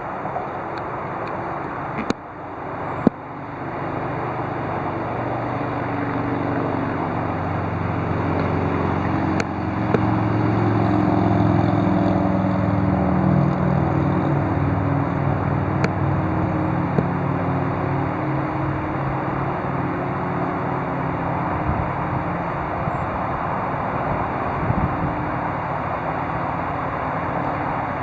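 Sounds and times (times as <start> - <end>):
vehicle engine running: 0.0 - 28.0.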